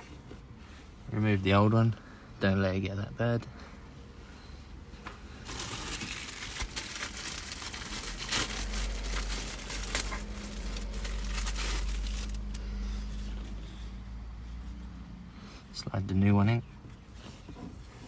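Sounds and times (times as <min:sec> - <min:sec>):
low steady hum: 0:00.0 - 0:18.0
filter crinkling and rustling: 0:04.9 - 0:13.6.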